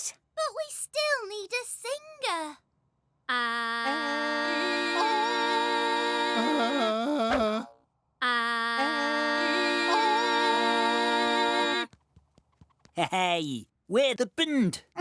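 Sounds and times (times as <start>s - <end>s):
person singing long wavering notes: 3.5s - 11.9s.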